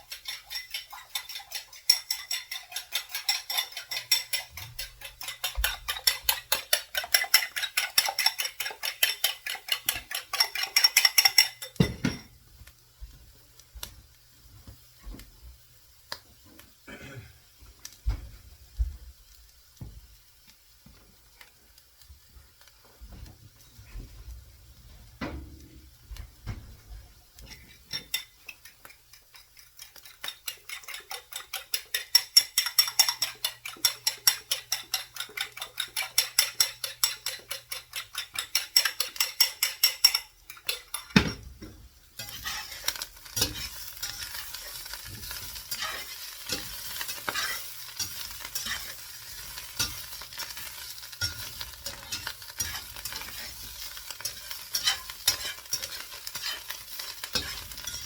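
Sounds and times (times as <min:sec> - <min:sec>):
utensil scraping pan: 0:00.0 - 0:11.9, 0:27.4 - 0:58.0
utensil stirring: 0:00.0 - 0:12.7, 0:26.9 - 0:58.0
food sizzling in a frying pan: 0:00.0 - 0:58.0.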